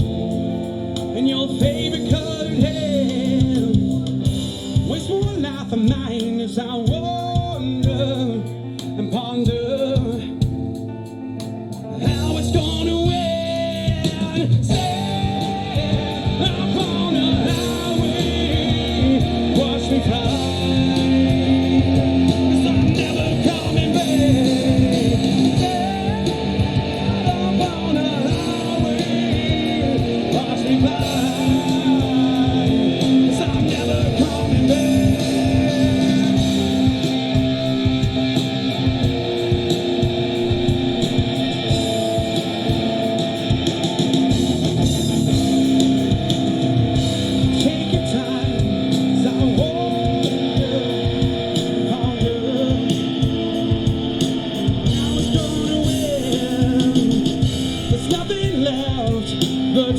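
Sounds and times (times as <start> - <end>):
live rock band playing: 0.0 - 59.9
person singing: 11.9 - 39.0, 47.0 - 59.9.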